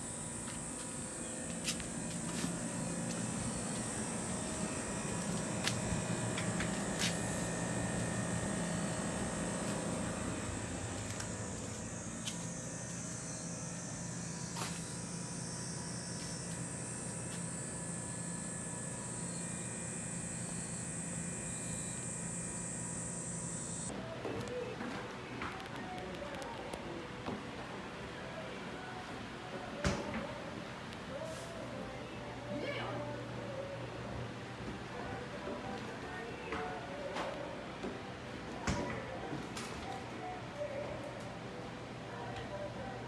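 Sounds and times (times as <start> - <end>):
high-pitched whine: 0.0 - 23.9
air conditioner humming: 0.0 - 43.0.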